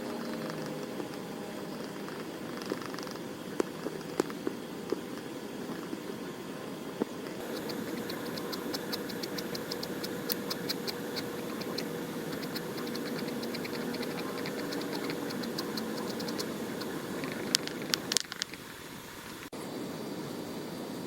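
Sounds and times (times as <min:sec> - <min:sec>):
pen nib ticking on paper: 0:07.4 - 0:18.6.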